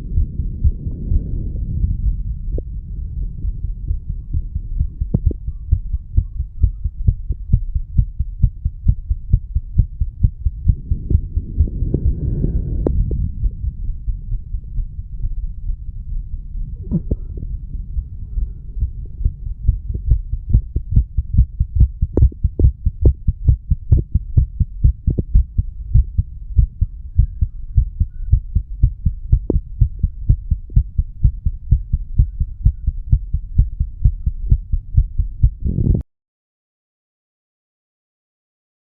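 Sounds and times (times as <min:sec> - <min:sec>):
heartbeat thumps: 0:00.0 - 0:15.9, 0:16.7 - 0:36.0.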